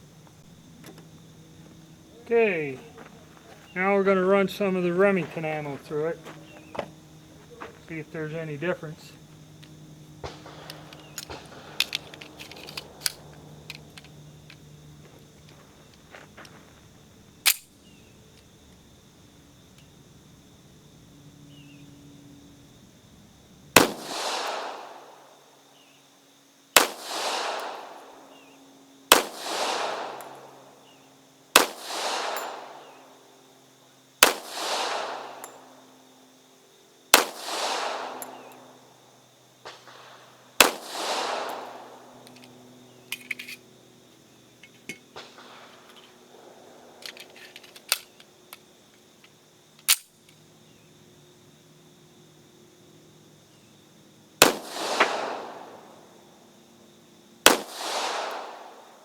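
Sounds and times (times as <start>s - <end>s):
pistol shots with echo: 8.7s - 14.5s, 23.7s - 25.3s, 26.8s - 28.3s, 29.1s - 30.7s, 31.6s - 33.1s, 34.2s - 35.6s, 37.1s - 38.8s, 39.6s - 42.2s, 54.4s - 56.0s, 57.4s - 59.0s.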